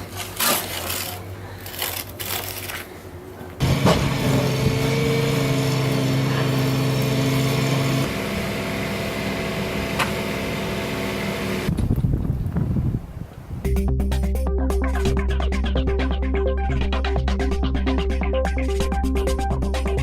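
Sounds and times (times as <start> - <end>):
engine running: 2.7 - 12.0.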